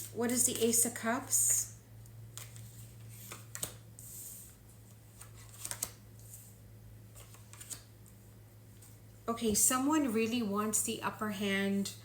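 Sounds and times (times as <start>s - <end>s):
cards shuffling: 2.3s - 6.5s, 7.1s - 7.9s.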